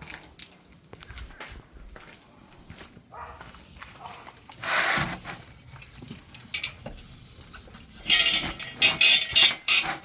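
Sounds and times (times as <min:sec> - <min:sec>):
metal parts clinking and clattering: 0:06.4 - 0:06.8, 0:08.0 - 0:10.0.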